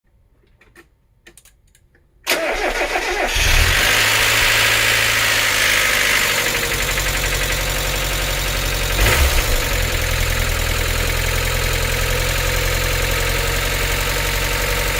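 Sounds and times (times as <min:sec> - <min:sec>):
starter cranking engine: 0:02.3 - 0:11.8
car engine idling with clatter: 0:03.3 - 0:14.9.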